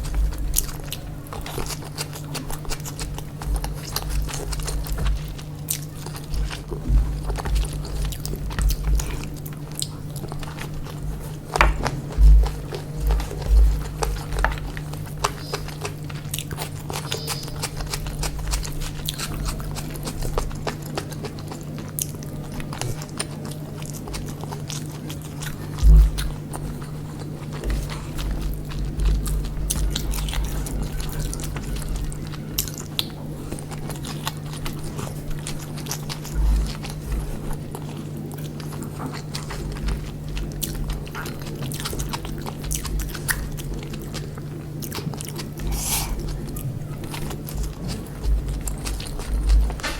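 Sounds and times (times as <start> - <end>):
chewing and biting food: 0.0 - 49.9
steady low hum: 0.0 - 49.9
soft thumps: 6.4 - 9.3, 10.8 - 15.3.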